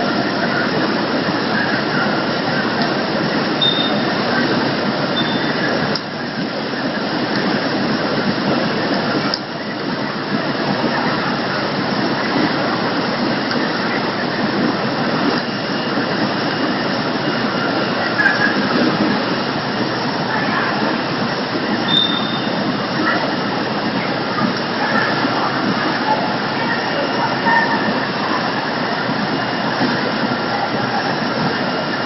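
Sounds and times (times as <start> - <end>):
loud machinery noise: 0.0 - 32.0
brief high squeaks: 3.6 - 4.0, 5.2 - 5.6, 21.8 - 22.6.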